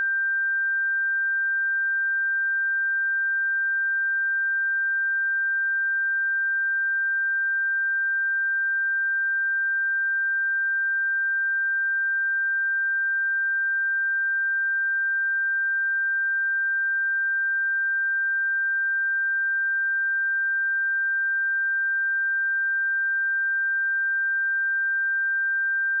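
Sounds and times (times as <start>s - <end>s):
high-pitched sine test tone: 0.0s - 26.0s.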